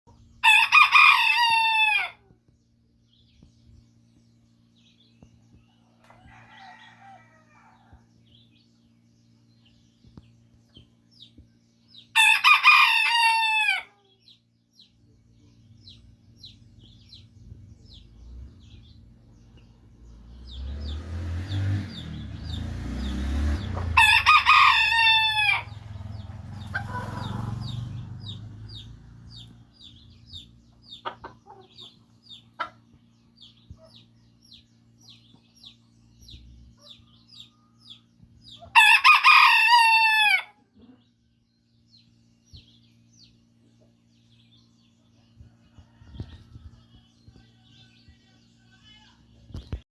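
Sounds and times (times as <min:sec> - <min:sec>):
rooster crowing: 0:00.4 - 0:02.2, 0:06.0 - 0:08.0, 0:12.2 - 0:14.0, 0:21.9 - 0:28.8, 0:38.7 - 0:40.6
low rumble: 0:15.6 - 0:31.0.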